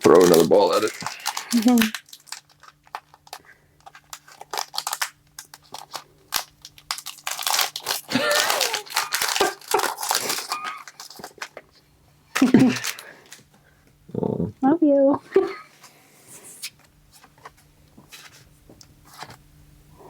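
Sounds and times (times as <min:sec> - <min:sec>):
foil wrapper tearing and crinkling: 0:00.0 - 0:11.7, 0:12.4 - 0:13.5
faint steady hum: 0:00.0 - 0:20.0.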